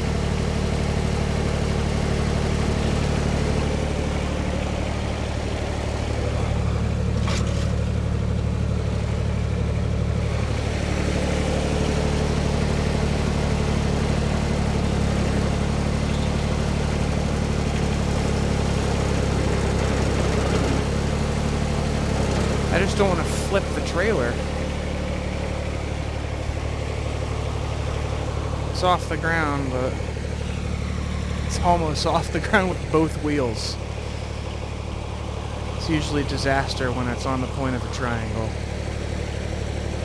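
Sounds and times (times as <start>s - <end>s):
tractor engine running: 0.0s - 40.0s.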